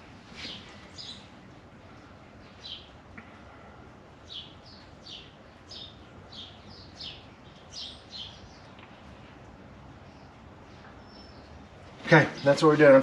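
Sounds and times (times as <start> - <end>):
low background noise: 0.0 - 13.0
bird chirping: 0.4 - 1.4, 2.4 - 3.0, 4.2 - 9.0, 10.0 - 13.0.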